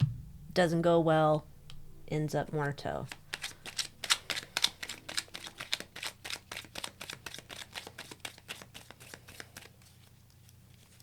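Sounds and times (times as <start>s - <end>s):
cards being shuffled: 3.0s - 11.0s.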